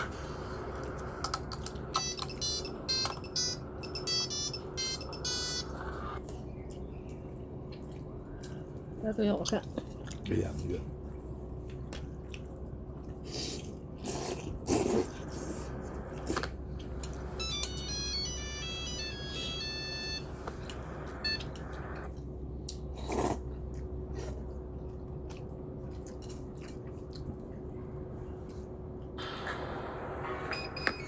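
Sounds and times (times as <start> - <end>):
mobile phone ringtone melody: 1.9 - 6.2, 17.2 - 21.6.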